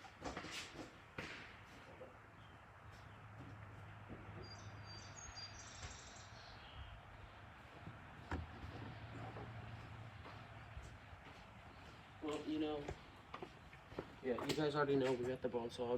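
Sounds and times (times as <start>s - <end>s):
faint bird chirps: 4.3s - 7.0s.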